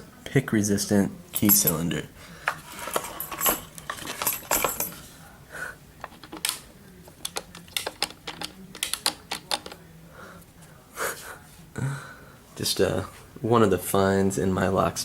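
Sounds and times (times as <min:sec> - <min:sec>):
metallic clicks and clinks: 0:02.7 - 0:05.0.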